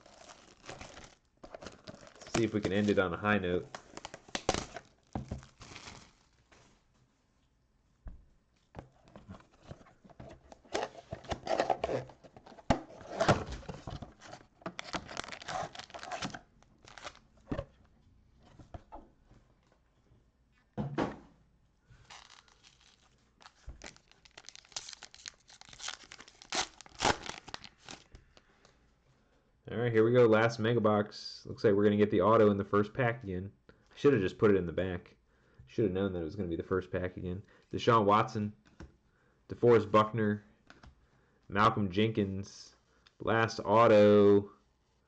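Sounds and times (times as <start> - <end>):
plastic wrap crinkling and tearing: 0.0 - 3.0, 3.6 - 6.6, 14.4 - 17.3, 22.0 - 28.1.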